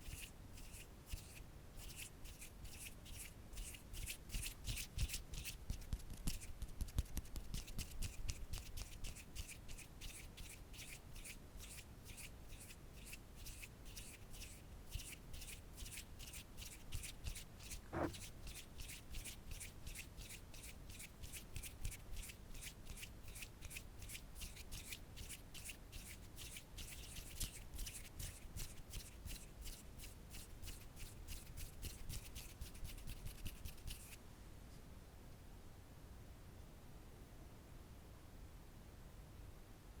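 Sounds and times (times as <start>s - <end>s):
hand scratching object: 0.0s - 34.2s.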